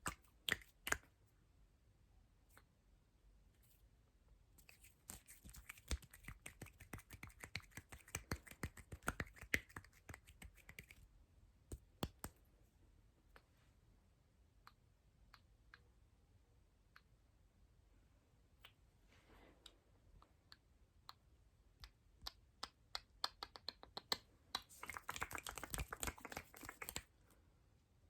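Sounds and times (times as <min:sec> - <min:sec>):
crisp clicks and snaps: 0:04.6 - 0:11.0, 0:11.7 - 0:12.4, 0:21.8 - 0:27.1.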